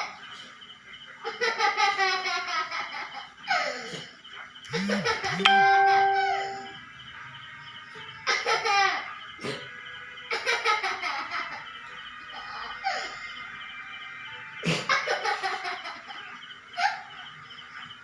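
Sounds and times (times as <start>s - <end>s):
ding-like ringing tone: 5.3s - 6.8s.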